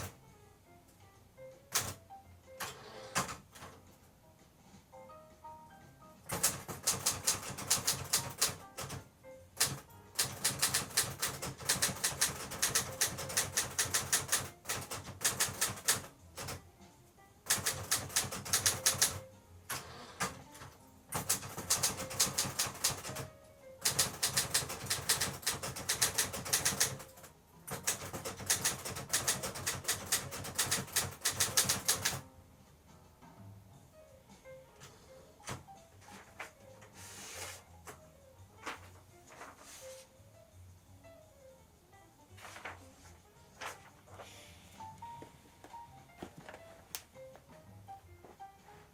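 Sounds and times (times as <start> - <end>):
manual typewriter typing: 1.7 - 2.0, 2.6 - 3.7, 6.3 - 16.6, 17.5 - 32.2.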